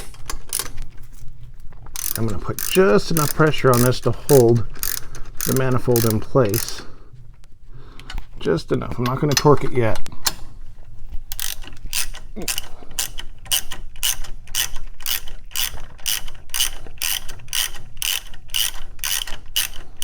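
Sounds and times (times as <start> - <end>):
ratchet wrench clicking: 0.0 - 0.8, 2.0 - 6.8, 11.3 - 20.0.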